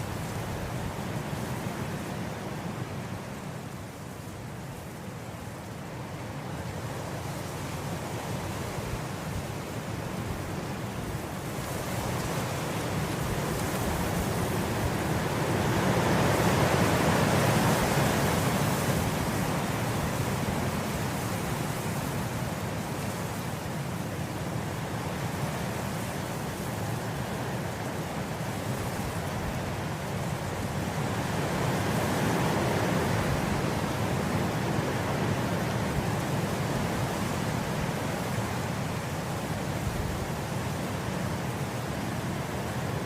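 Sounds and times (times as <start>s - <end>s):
wind blowing through grass: 0.0s - 43.0s.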